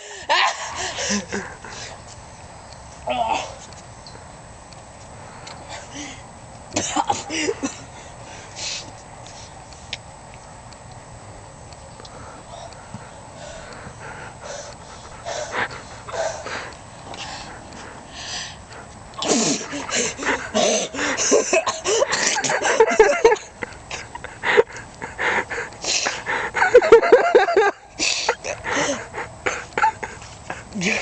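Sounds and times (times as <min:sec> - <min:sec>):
wheezing gasping breaths: 0:00.0 - 0:02.1, 0:12.1 - 0:27.0, 0:27.7 - 0:31.0
man sneezing: 0:19.2 - 0:19.7.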